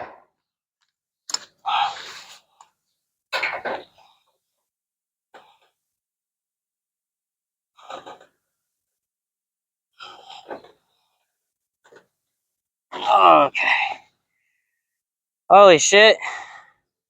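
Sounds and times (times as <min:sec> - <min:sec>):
man breathing hard: 0:16.2 - 0:16.9.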